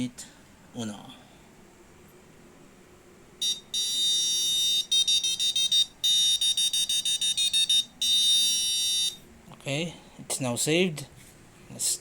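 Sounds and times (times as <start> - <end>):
electronic buzzer beeps: 3.4 - 9.2.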